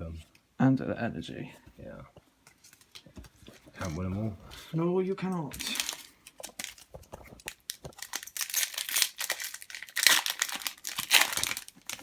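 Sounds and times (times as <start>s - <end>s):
foil wrapper crinkling and tearing: 5.6s - 12.0s.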